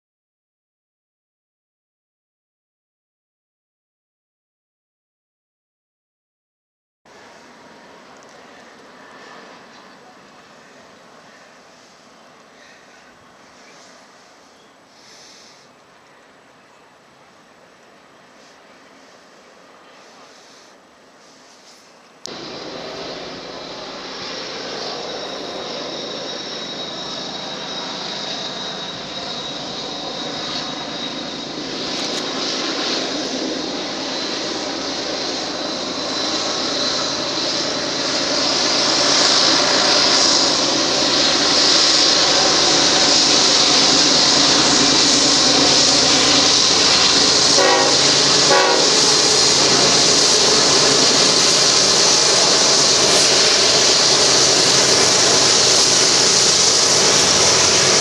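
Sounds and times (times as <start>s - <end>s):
steel wheels hissing on rail: 8.4s - 15.8s, 18.2s - 23.4s, 37.0s - 58.0s
freight train rumbling past: 22.2s - 58.0s.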